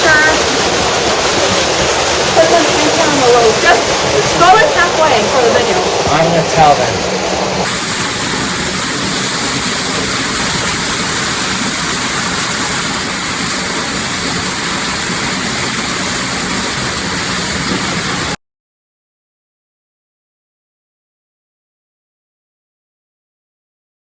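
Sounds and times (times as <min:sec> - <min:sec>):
rush of falling water: 0:00.0 - 0:18.4.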